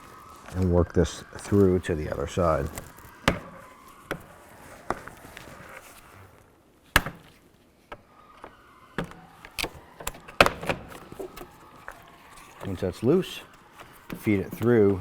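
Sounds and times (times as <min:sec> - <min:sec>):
sharp plastic clicks and knocks: 0:07.0 - 0:12.9.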